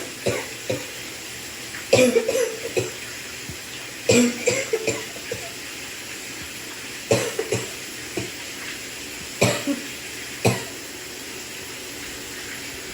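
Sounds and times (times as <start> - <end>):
shower water hissing: 0.0 - 12.9
person coughing: 0.2 - 0.9, 2.0 - 3.0, 4.1 - 5.6, 7.1 - 7.8, 9.4 - 9.9.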